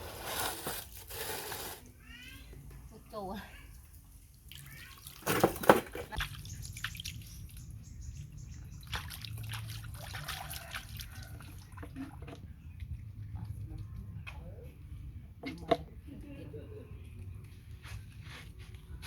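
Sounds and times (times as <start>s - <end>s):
water dripping: 6.2s - 12.0s
bath water sloshing and splashing: 8.8s - 12.3s.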